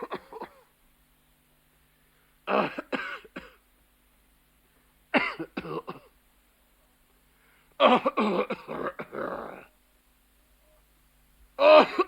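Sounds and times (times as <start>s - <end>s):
person coughing: 0.0s - 0.7s, 2.5s - 3.6s, 5.2s - 6.2s, 7.8s - 9.7s, 11.6s - 12.0s.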